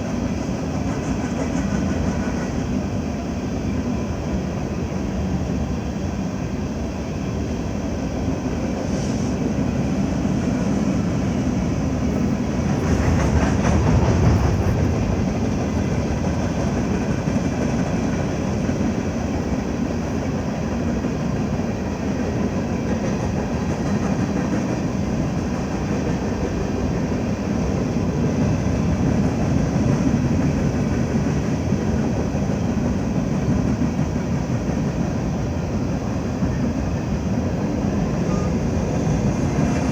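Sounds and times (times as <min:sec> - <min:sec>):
clickety-clack of wheels: 0:00.0 - 0:03.0, 0:12.0 - 0:39.9
train wheels rumbling on rails: 0:00.0 - 0:39.9.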